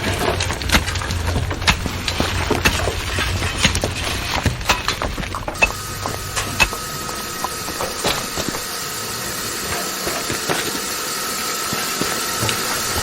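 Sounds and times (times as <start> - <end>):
sharp knocks and clatter: 0.0 - 8.8
high-pitched machine whine: 0.0 - 13.0
low hum: 0.0 - 13.0.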